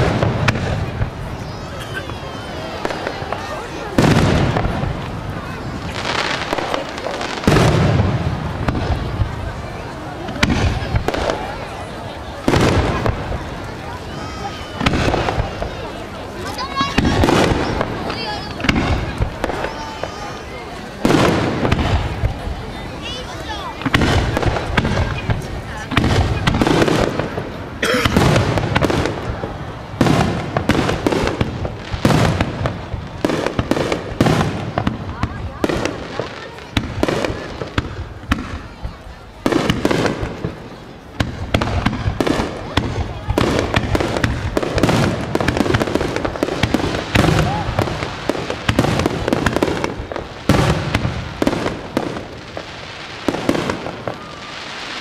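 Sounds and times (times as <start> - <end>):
crackling pops: 0.0 - 1.2, 16.5 - 20.2, 23.8 - 40.6
fireworks crackling: 0.0 - 55.0.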